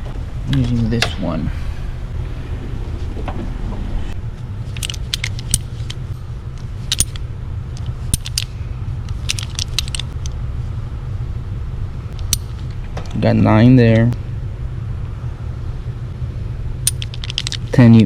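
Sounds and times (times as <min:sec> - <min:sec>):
low rumble: 0:00.0 - 0:18.0
metal hand tools clinking: 0:04.7 - 0:10.3, 0:12.2 - 0:14.1, 0:16.9 - 0:17.8.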